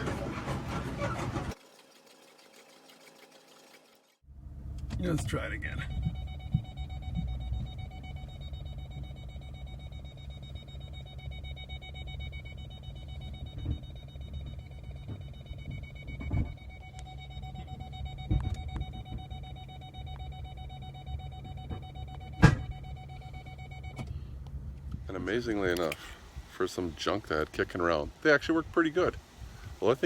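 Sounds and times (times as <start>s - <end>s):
parking sensor beeping: 5.0s - 24.3s
loud thump: 22.4s - 22.8s.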